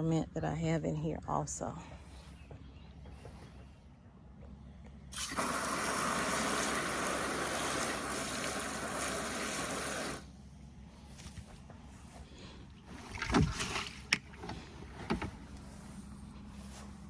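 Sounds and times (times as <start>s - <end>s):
garden hose spraying water: 5.1s - 10.3s.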